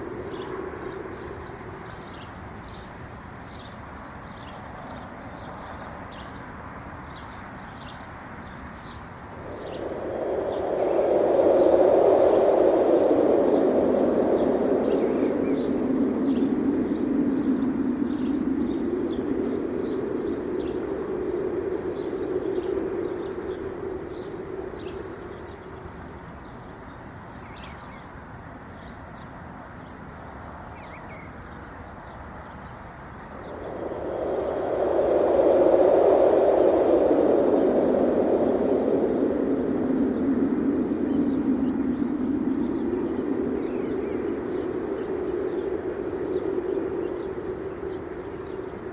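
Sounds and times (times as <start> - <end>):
small birds chirping: 0.0 - 48.9
wind gusting: 0.0 - 48.9.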